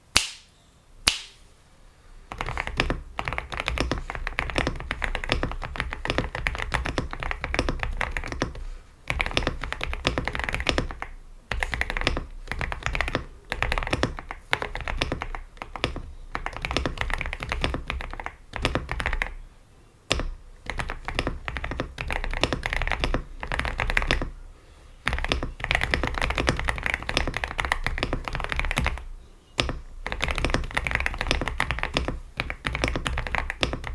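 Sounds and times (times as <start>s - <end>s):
sharp click: 0.1s - 0.5s, 1.1s - 1.4s
fast typing on mechanical keyboard: 2.3s - 19.4s, 20.1s - 24.4s, 25.0s - 33.9s.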